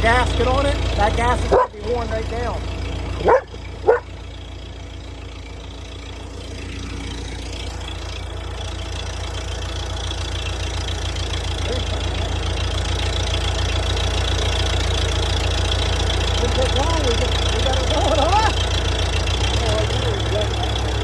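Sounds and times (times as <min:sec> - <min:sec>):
engine idling: 0:00.0 - 0:21.0
dog yipping: 0:01.5 - 0:01.8, 0:03.2 - 0:04.2.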